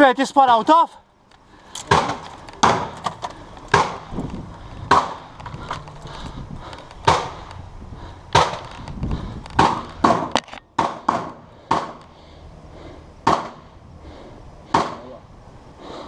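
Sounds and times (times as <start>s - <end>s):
airsoft gun shots: 1.9s - 3.0s, 3.7s - 4.1s, 4.9s - 5.3s, 8.3s - 8.6s, 9.6s - 12.0s, 13.2s - 13.6s.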